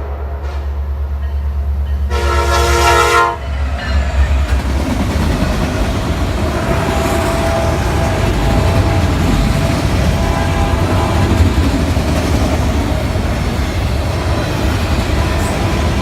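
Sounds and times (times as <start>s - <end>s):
locomotive horn blast: 0.0s - 1.2s, 2.1s - 3.6s, 6.5s - 9.3s, 10.0s - 11.6s.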